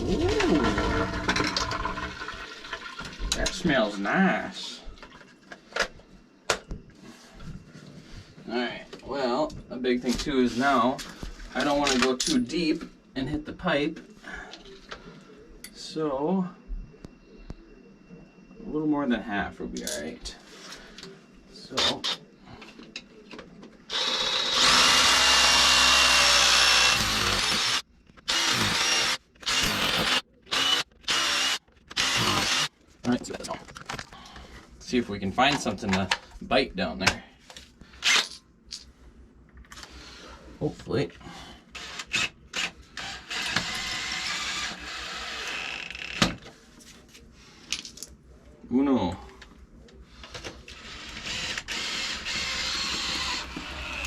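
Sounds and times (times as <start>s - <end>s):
power drill boring into concrete: 23.9s - 32.7s, 41.8s - 45.9s, 50.7s - 54.0s.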